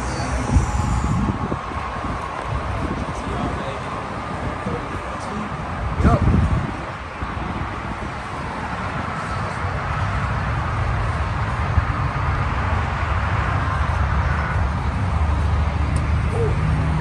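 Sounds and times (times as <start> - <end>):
car engine rumbling: 0.0 - 17.0.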